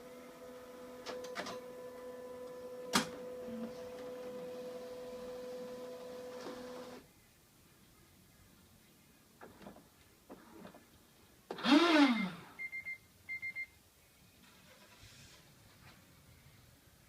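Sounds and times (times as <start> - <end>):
document feeder mechanical whine: 0.0 - 7.0.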